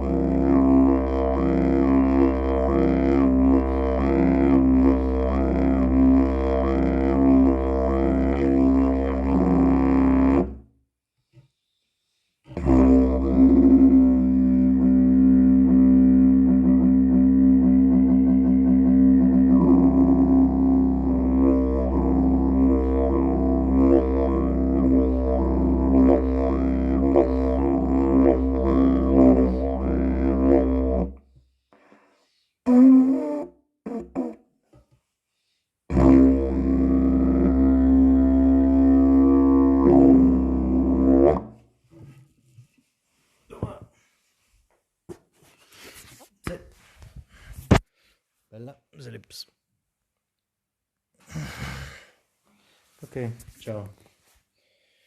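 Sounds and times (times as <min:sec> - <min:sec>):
didgeridoo drone: 0:00.0 - 0:10.5, 0:12.6 - 0:31.1, 0:35.9 - 0:41.5.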